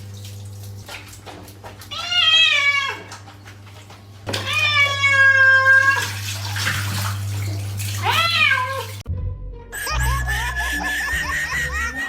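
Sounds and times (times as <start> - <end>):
cat meowing: 1.9 - 3.2, 4.3 - 6.2, 8.0 - 9.0
background music: 9.1 - 12.0.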